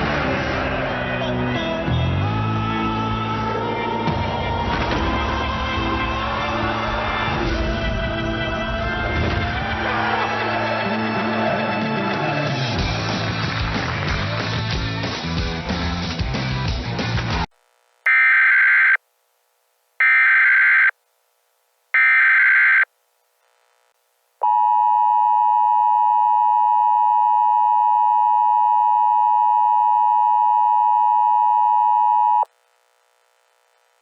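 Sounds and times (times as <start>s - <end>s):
two-tone attention signal: 18.1s - 19.0s, 20.0s - 20.9s, 22.0s - 22.9s.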